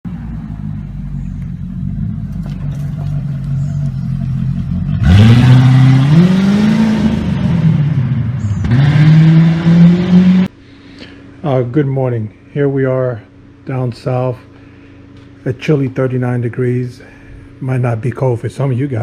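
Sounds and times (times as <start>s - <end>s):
car engine idling and revving: 0.1s - 10.6s.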